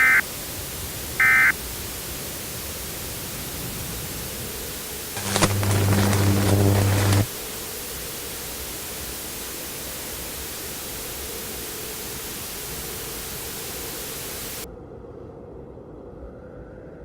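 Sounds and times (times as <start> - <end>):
radio static hiss: 5.0 - 7.3
faint steady hum: 5.2 - 7.3.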